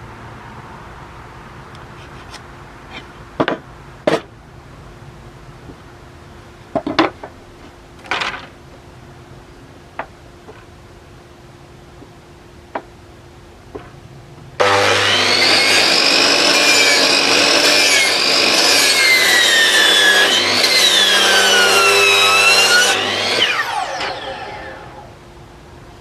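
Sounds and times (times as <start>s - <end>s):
handheld power tool whining: 14.6s - 25.0s.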